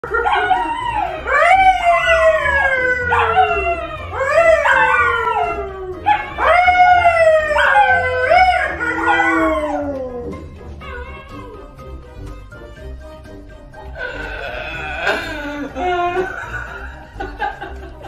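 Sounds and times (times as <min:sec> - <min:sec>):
man imitating dog howl: 0:00.7 - 0:10.4.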